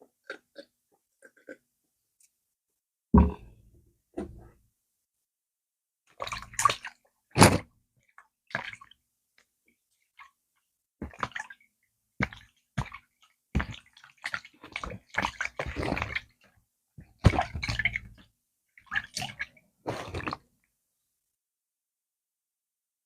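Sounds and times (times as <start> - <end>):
wet chewing and swallowing: 0.2 - 1.6, 19.2 - 20.4.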